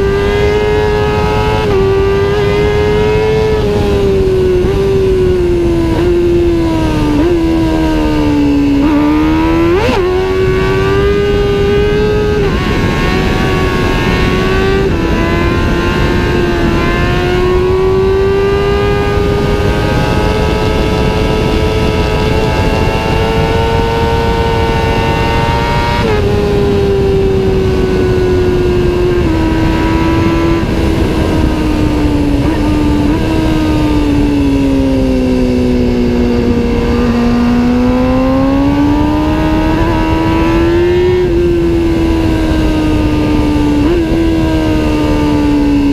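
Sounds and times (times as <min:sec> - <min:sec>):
motorcycle engine high revs: 0:00.0 - 0:45.9.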